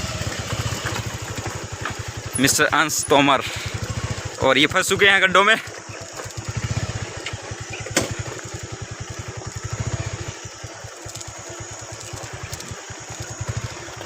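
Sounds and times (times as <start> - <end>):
motorcycle engine thudding: 5.6 - 10.2.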